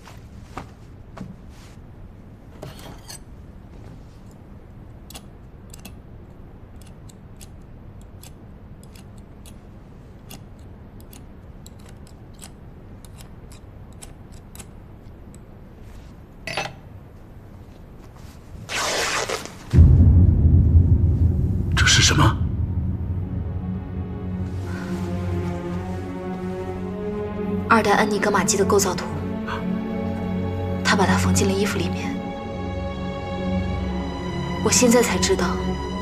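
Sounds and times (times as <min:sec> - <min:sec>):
cloth rustle: 0:00.0 - 0:02.0, 0:17.5 - 0:19.7
scissors snipping stitches: 0:05.1 - 0:06.0, 0:06.8 - 0:15.5
low steady hum: 0:19.6 - 0:36.0.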